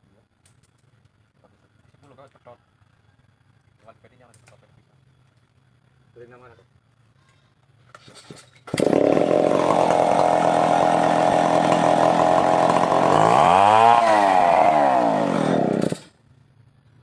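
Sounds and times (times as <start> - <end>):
chainsaw cutting wood: 8.7 - 16.2.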